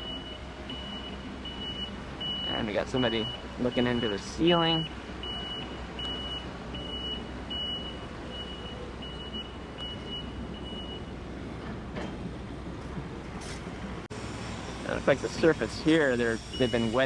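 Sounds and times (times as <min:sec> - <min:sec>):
vehicle backup alarm beeping: 0:00.0 - 0:11.3, 0:15.4 - 0:17.0
steady background noise: 0:00.0 - 0:17.0.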